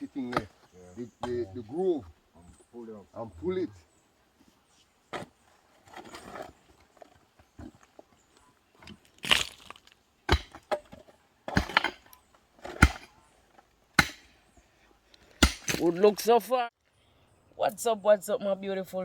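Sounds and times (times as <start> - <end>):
hand tools striking ground: 0.0 - 1.6, 8.8 - 14.5, 15.2 - 16.3.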